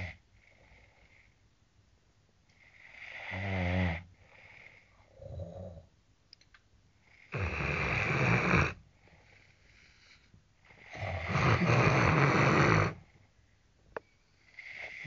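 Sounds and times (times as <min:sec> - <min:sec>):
person snoring: 0:07.1 - 0:09.6, 0:10.7 - 0:13.0.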